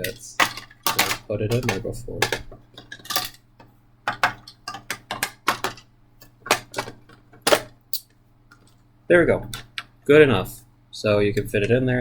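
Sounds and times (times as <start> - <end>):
plastic toy parts clicking: 0.0 - 3.4, 4.1 - 8.7.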